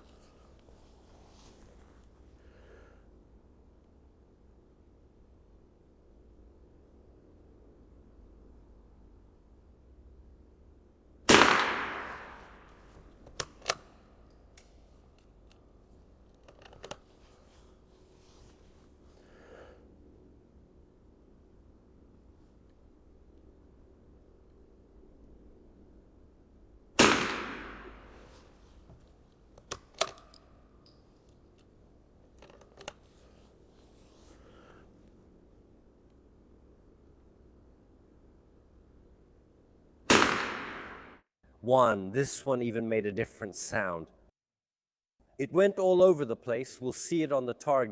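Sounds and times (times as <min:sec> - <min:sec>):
rifle shot with echo: 0:11.3 - 0:12.8, 0:27.0 - 0:28.3, 0:40.1 - 0:41.2.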